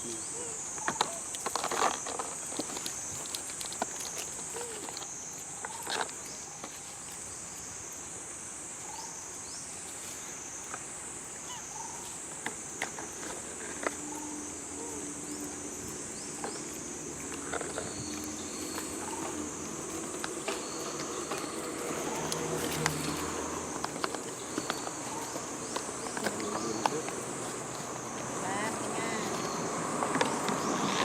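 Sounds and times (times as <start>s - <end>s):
high-pitched insect chorus: 0.0s - 31.0s
small clicks and rustles: 0.9s - 7.3s.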